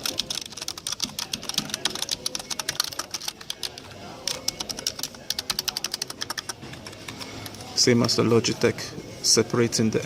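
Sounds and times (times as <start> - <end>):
typing on keyboard: 0.0 - 7.7.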